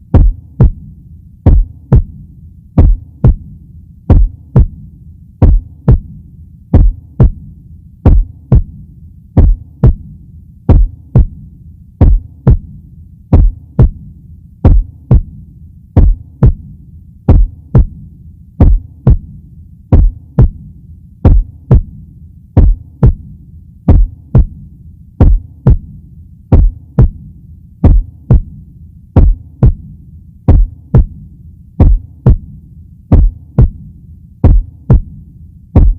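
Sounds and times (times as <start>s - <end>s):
heartbeat double thump: 0.1s - 0.8s, 1.5s - 2.2s, 2.8s - 3.5s, 4.1s - 4.8s, 5.4s - 6.1s, 6.8s - 7.4s, 8.1s - 8.7s, 9.4s - 10.0s, 10.7s - 11.4s, 12.0s - 12.7s, 13.3s - 14.0s, 14.6s - 15.3s, 16.0s - 16.6s, 17.3s - 18.0s, 18.6s - 19.3s, 19.9s - 20.6s, 21.2s - 21.9s, 22.6s - 23.2s, 23.9s - 24.6s, 25.2s - 25.9s, 26.5s - 27.2s, 27.8s - 28.6s, 29.2s - 29.9s, 30.5s - 31.2s, 31.8s - 32.5s, 33.1s - 33.8s, 34.4s - 35.1s.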